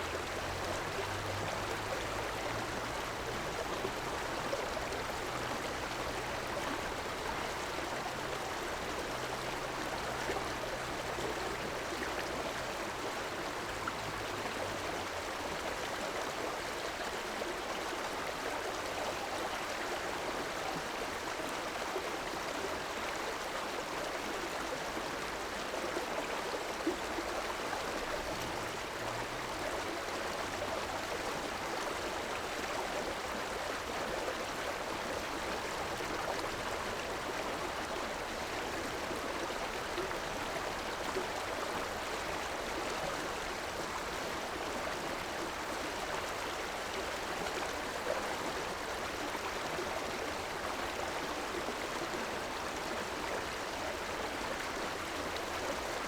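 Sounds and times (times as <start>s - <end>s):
river water rushing: 0.1s - 10.1s.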